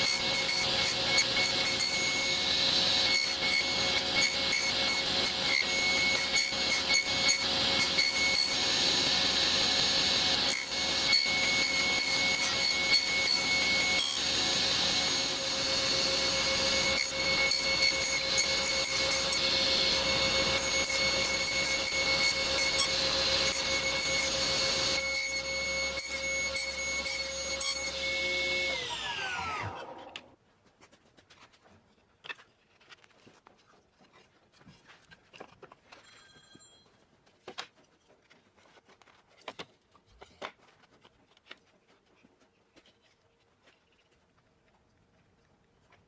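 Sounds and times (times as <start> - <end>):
power saw cutting wood: 0.0 - 30.3.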